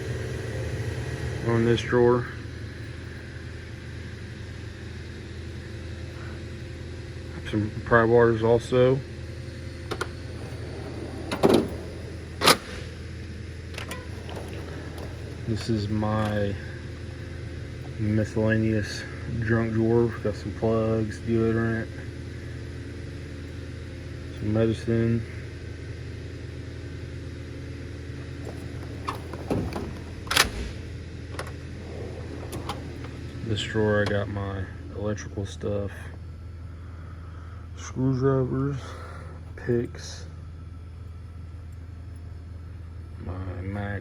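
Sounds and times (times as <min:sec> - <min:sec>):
low mechanical hum: 0:00.0 - 0:44.0
drawer sliding on runners: 0:09.9 - 0:13.0, 0:13.7 - 0:17.1, 0:28.3 - 0:33.7
metal drawer clunking shut: 0:09.9 - 0:13.0, 0:13.6 - 0:17.2, 0:28.2 - 0:34.2.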